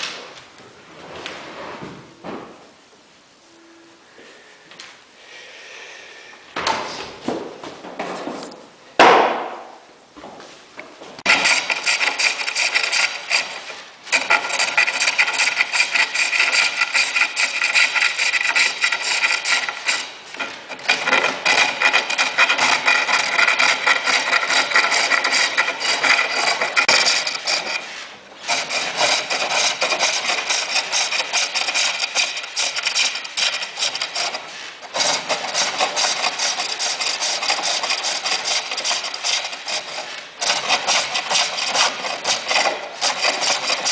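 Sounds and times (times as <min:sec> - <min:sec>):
lathe tool scraping workpiece: 0:11.3 - 0:43.9.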